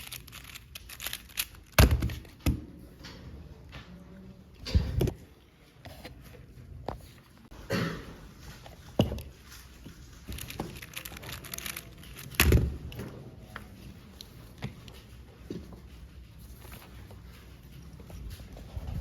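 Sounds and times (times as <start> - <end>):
faint room noise: 0.0 - 19.0
knocks and thumps indoors: 1.6 - 4.0.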